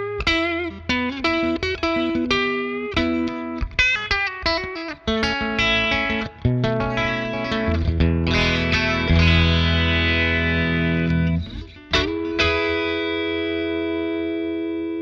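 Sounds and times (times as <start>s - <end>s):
electric guitar notes and chords: 0.0s - 15.0s.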